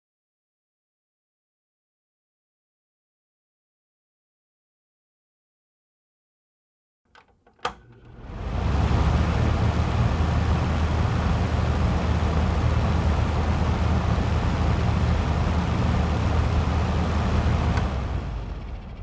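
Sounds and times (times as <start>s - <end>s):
fan switch click: 7.2s - 8.2s, 17.5s - 18.2s
electric fan running: 7.6s - 19.0s.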